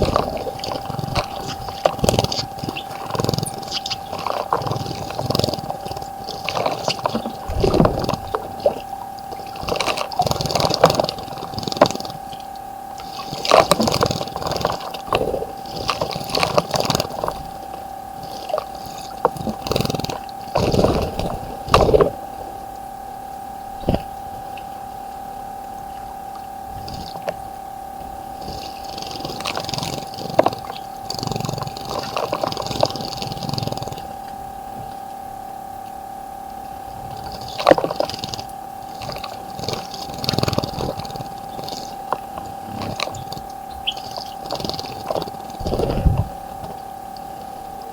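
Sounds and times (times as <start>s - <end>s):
birds splashing in water: 0.0s - 25.2s, 36.7s - 47.9s
steady tone: 7.4s - 10.0s.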